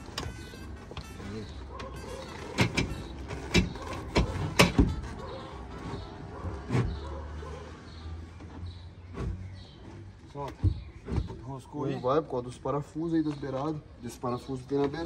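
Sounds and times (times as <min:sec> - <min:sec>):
speaker box thudding on truck bed: 0:00.0 - 0:05.3.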